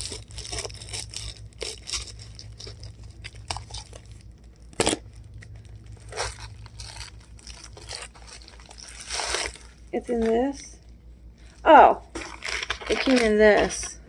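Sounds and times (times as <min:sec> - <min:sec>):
packaging tearing: 0:00.0 - 0:10.3, 0:12.1 - 0:13.9
packaging rustling and crinkling: 0:00.0 - 0:10.5, 0:12.1 - 0:14.0
low steady hum: 0:00.0 - 0:14.0.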